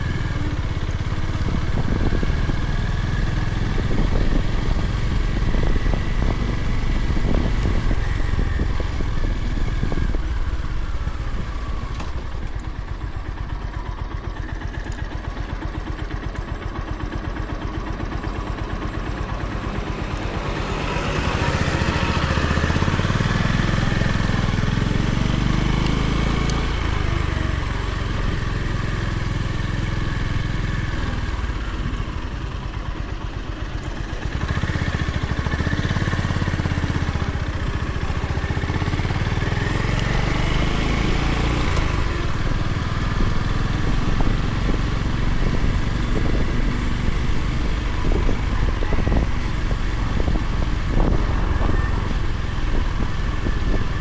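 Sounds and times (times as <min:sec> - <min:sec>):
motorcycle engine running: 0:00.0 - 0:54.0
wind rushing past microphone: 0:01.4 - 0:11.9, 0:41.9 - 0:54.0.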